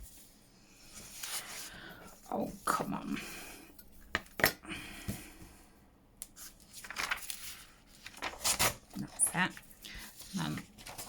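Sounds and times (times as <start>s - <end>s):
paper rustling: 0.9s - 2.2s, 6.4s - 11.0s.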